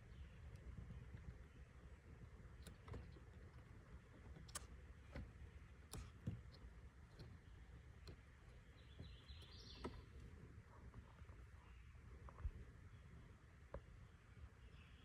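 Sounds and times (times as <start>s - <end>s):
low steady rumble: 0.0s - 15.0s
plastic trim clicks: 2.5s - 10.2s.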